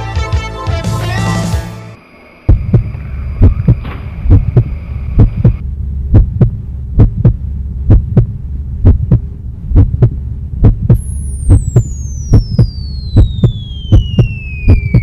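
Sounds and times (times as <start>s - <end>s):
steady low hum: 1.9s - 15.0s
paired low thumps: 2.5s - 15.0s.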